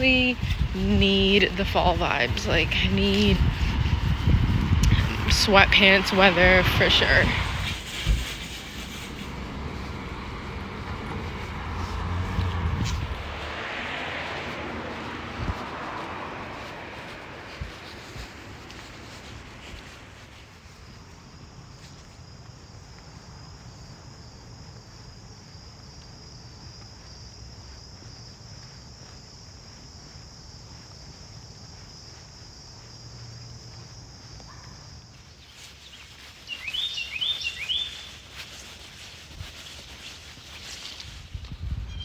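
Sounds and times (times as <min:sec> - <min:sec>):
crickets droning: 0:00.0 - 0:42.0
bird chirping sharply: 0:36.5 - 0:38.1.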